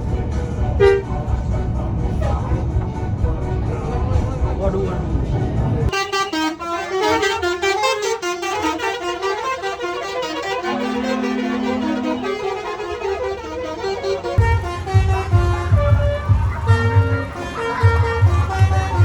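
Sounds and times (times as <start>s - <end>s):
melody air horn on a bus: 0.8s - 1.2s, 5.9s - 19.0s.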